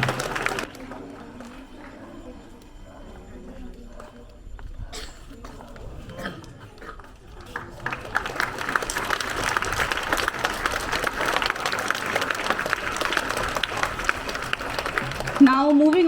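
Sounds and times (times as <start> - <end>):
children applauding: 0.0 - 2.0, 6.4 - 16.0.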